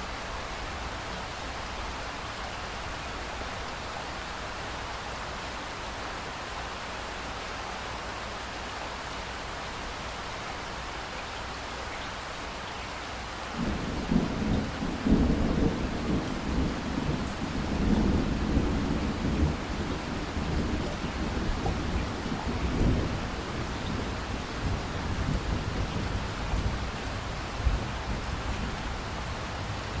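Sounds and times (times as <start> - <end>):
rain hiss: 0.0 - 30.0
low rumble of thunder: 13.6 - 30.0.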